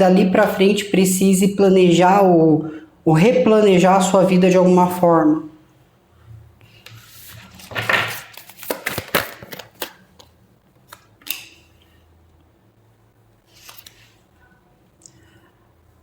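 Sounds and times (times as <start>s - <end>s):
cards clicking and swishing: 7.6s - 11.6s.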